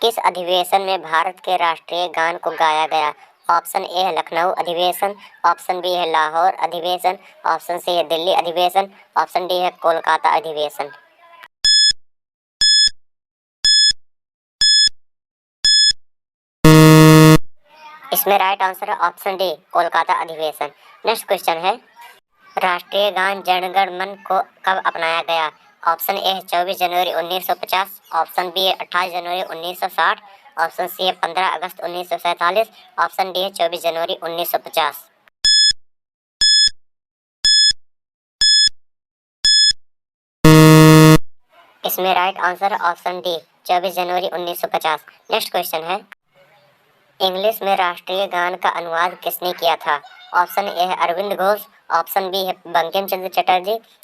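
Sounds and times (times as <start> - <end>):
short electronic beeps: 11.6 - 12.0, 12.6 - 12.9, 13.6 - 14.0, 14.6 - 14.9, 15.6 - 16.0, 16.6 - 17.4, 35.4 - 35.8, 36.4 - 36.7, 37.4 - 37.8, 38.4 - 38.7, 39.4 - 39.8, 40.4 - 41.2.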